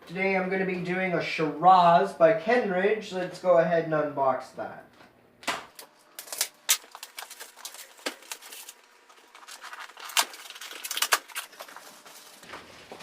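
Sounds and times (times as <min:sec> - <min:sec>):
cardboard box crackles and rustles: 0:06.9 - 0:13.0.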